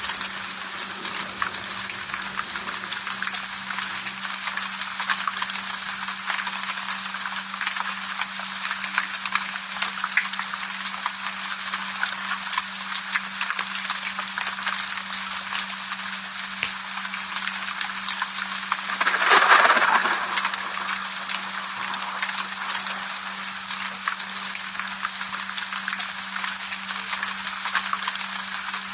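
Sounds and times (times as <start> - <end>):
rain patter: 0.0 - 28.9
low hum: 18.7 - 25.8.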